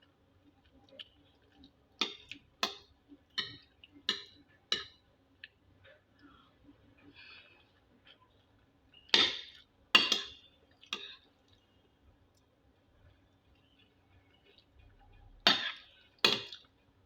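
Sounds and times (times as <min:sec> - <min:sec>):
cutlery clinking on a dish: 0:09.1 - 0:10.4, 0:15.5 - 0:16.6.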